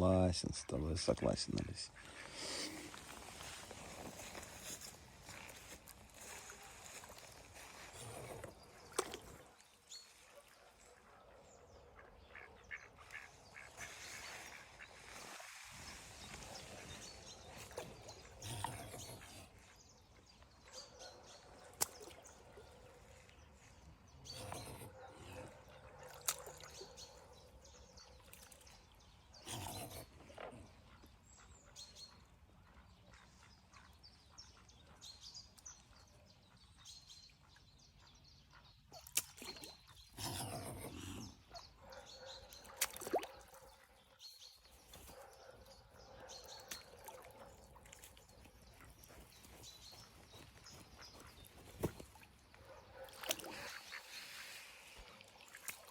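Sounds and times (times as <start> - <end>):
swans calling softly: 11.9 - 19.8.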